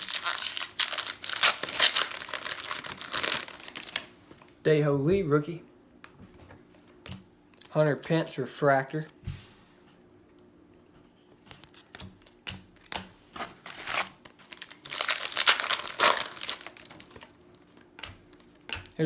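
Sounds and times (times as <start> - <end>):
plastic wrapper crinkling and tearing: 0.0 - 4.2, 13.6 - 17.3.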